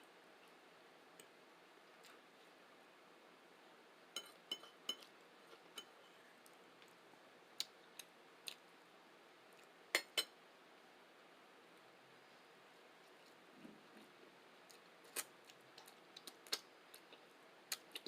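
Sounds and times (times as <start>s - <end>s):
utensil clinking against a dish: 4.2s - 6.0s.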